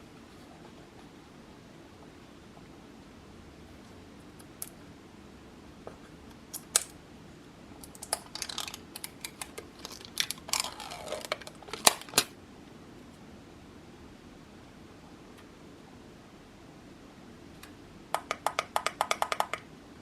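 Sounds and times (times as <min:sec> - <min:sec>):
handling clicks and rustling: 0:07.9 - 0:12.3.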